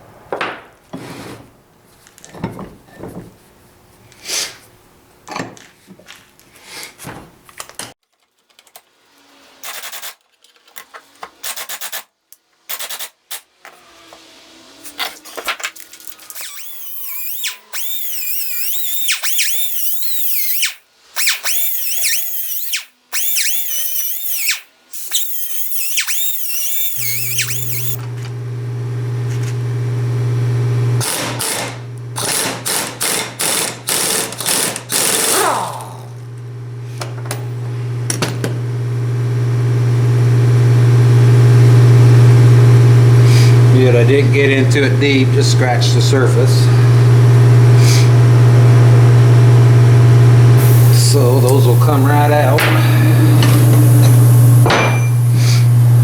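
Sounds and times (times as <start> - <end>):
metal knocks and scraping: 2.2 - 3.5
high squeaks: 16.3 - 28.0
electric power tool motor: 21.4 - 56.0
tool grinding against metal: 25.0 - 28.3, 31.0 - 36.0, 50.6 - 56.0.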